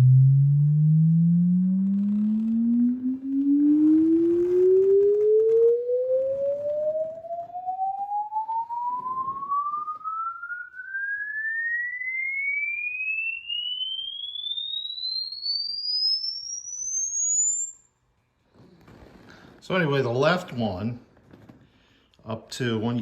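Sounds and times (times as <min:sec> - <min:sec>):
sine wave tone rising in pitch: 0:00.0 - 0:18.0.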